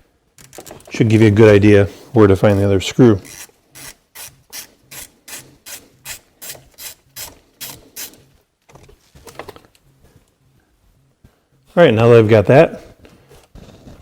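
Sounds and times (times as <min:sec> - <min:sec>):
ratchet pawl clicking: 0:03.2 - 0:08.2.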